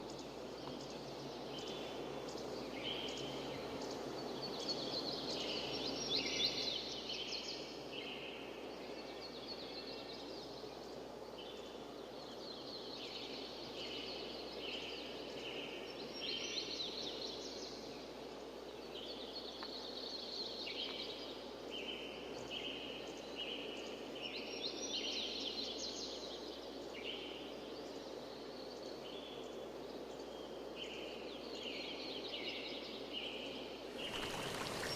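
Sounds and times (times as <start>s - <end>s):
birds calling: 33.9s - 34.9s
waterfall rushing: 34.0s - 34.9s.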